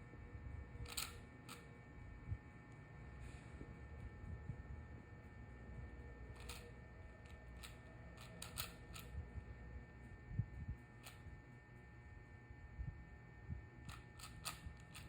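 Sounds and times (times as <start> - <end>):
low background hum: 0.0 - 15.0
plastic puzzle cube clicks: 7.6 - 9.1.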